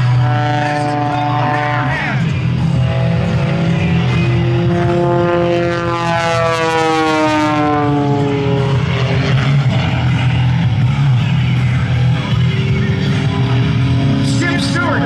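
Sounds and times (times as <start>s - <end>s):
propeller plane flying past: 0.0s - 15.0s.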